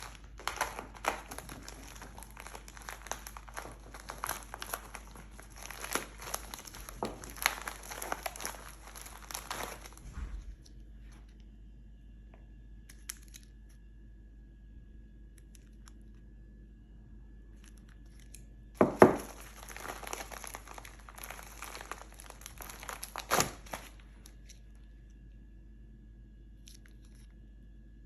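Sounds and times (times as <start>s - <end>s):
packaging crinkling and tearing: 0.0s - 10.4s, 17.6s - 24.9s
loud packaging crackle: 0.0s - 10.7s, 17.6s - 24.6s.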